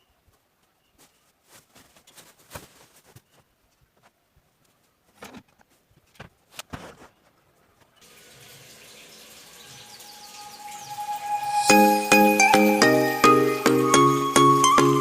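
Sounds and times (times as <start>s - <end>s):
water running from a tap: 8.0s - 11.0s.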